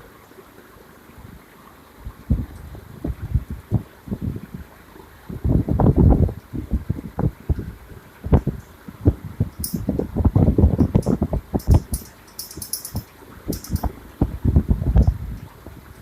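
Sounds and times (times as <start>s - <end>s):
ceiling fan running: 0.0s - 16.0s
airflow buffeting microphone: 2.0s - 16.0s
fan clicking and rattling ticks: 5.4s - 16.0s.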